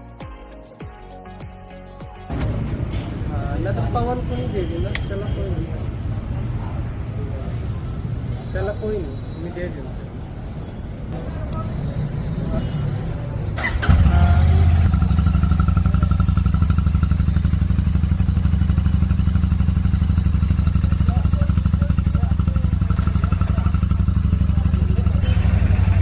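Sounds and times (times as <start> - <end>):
motorcycle engine idling: 12.9 - 26.0.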